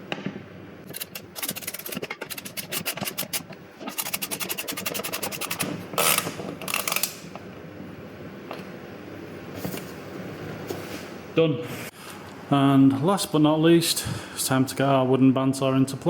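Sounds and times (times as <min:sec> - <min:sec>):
rasping bursts: 0:00.9 - 0:05.7.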